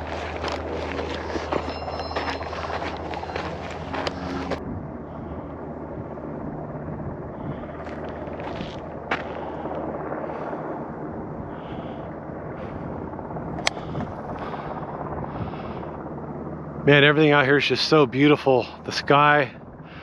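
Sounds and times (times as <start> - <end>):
footsteps crunching on dirt: 0.0 - 4.6, 7.8 - 9.5
wind rumbling on microphone: 0.0 - 16.8.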